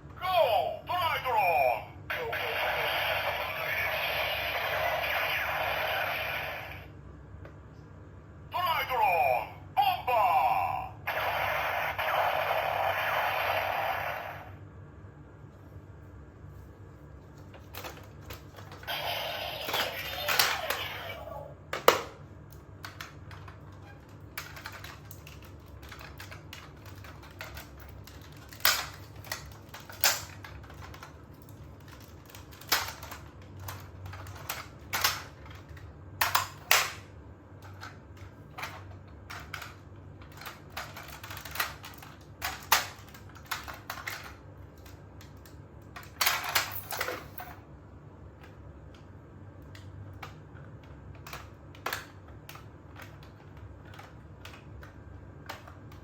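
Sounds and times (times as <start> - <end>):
plastic toy car clicking: 24.4 - 31.2, 31.8 - 37.0, 38.6 - 46.7.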